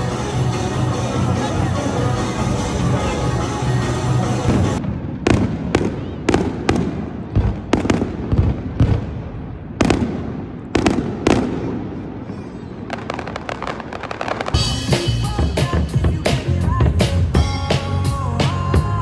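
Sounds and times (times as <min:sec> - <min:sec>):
music: 0:00.0 - 0:04.8, 0:14.6 - 0:19.0
fireworks bangs: 0:04.4 - 0:16.3.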